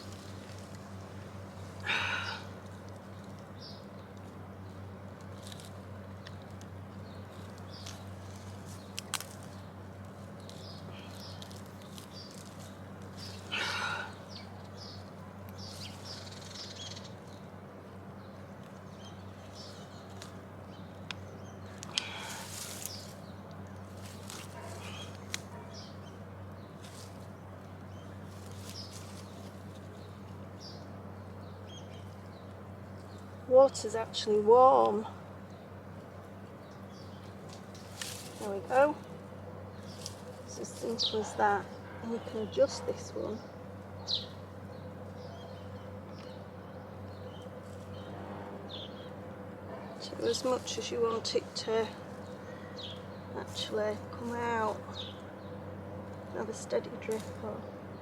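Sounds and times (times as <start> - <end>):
birds chirping: 0.0 - 58.0
steady low hum: 0.0 - 58.0.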